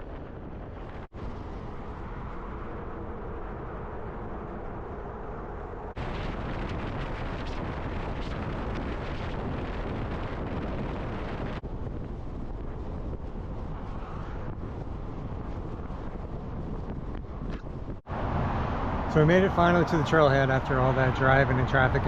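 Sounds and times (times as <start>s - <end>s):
vehicle road and wind noise: 0.0s - 22.0s.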